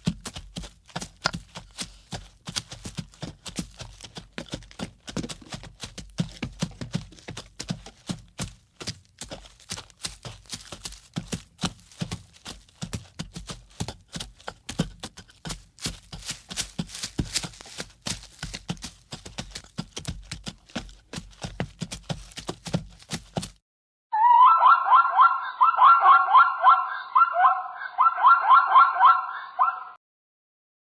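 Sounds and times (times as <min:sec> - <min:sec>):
hooves clip-clopping: 0:00.0 - 0:23.6
high warbling call: 0:24.1 - 0:30.0.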